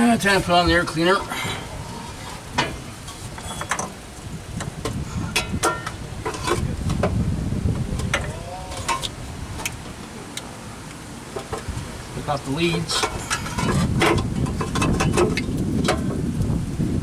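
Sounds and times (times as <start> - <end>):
metallic clicks and clanks: 1.1 - 4.0, 4.6 - 7.2, 7.9 - 10.5, 12.6 - 16.1.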